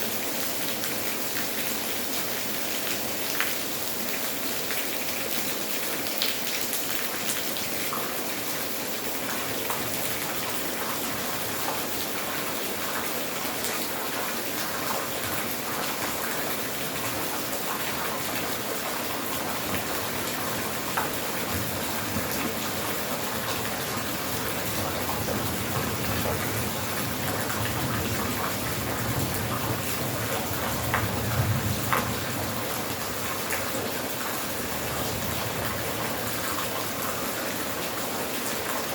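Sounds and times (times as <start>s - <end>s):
steady rain hiss: 0.0s - 38.9s
running water rushing: 9.2s - 38.9s.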